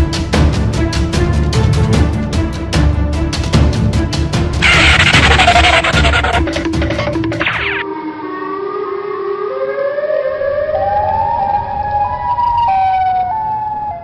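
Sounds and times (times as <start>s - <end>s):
siren wailing: 4.6s - 6.6s, 7.3s - 14.0s.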